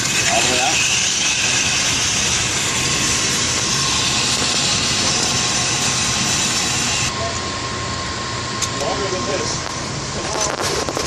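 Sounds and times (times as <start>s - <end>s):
loud rushing noise: 0.8s - 7.1s.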